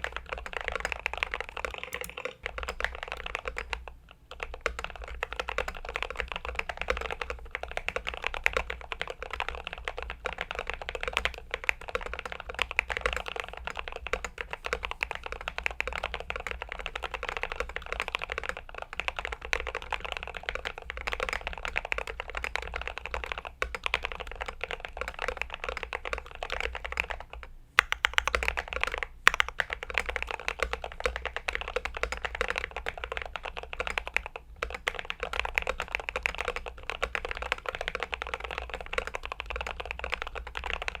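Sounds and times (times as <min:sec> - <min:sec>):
fast mechanical keyboard typing: 0:00.0 - 0:41.0.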